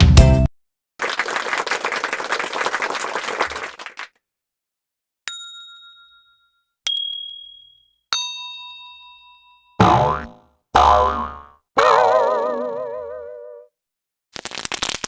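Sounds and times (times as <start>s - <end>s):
people clapping: 1.0s - 4.2s
bell dings: 5.3s - 9.8s.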